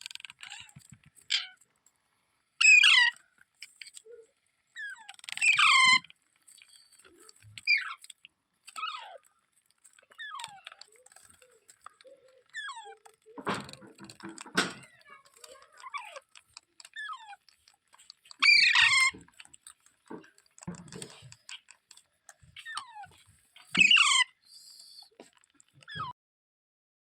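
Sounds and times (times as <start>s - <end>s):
parrot screeching: 0.4s - 1.6s, 2.6s - 3.2s, 4.8s - 6.1s, 7.6s - 8.1s, 8.7s - 9.2s, 18.2s - 19.4s, 23.7s - 24.4s.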